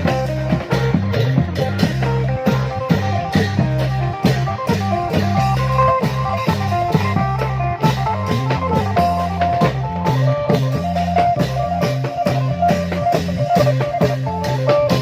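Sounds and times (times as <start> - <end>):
drum band playing procession music: 0.0 - 15.0.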